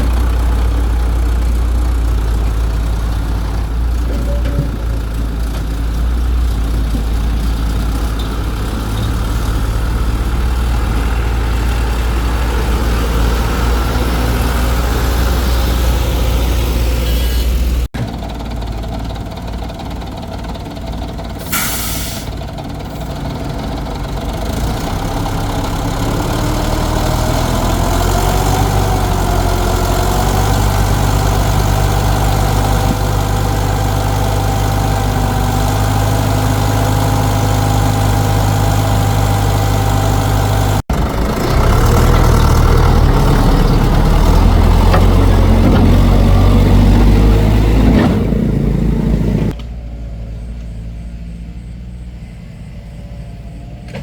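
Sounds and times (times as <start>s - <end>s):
diesel engine running: 0.0s - 54.0s
short hiss: 21.4s - 22.3s.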